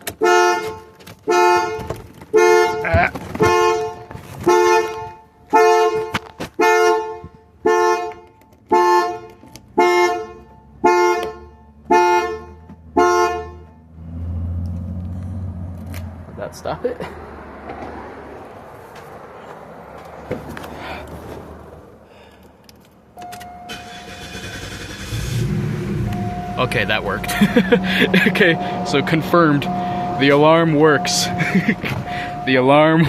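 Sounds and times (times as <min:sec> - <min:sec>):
car alarm honking horn: 0:00.0 - 0:13.9, 0:23.2 - 0:33.0
car engine idling: 0:23.7 - 0:33.0.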